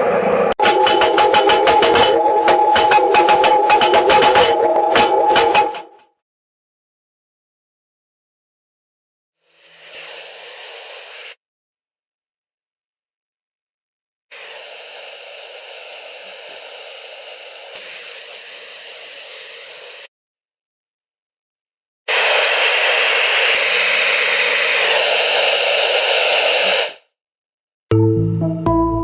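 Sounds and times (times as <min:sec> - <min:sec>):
steady hiss: 0:09.6 - 0:11.4.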